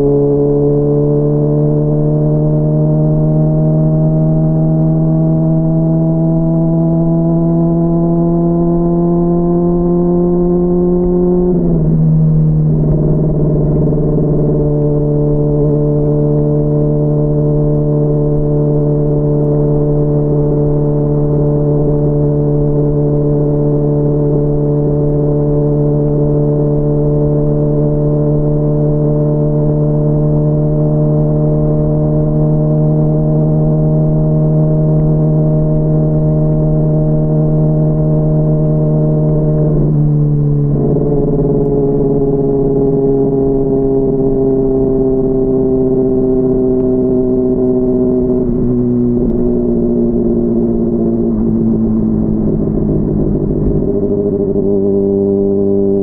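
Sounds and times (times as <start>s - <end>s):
muffled motorcycle engine: 0.0s - 56.0s.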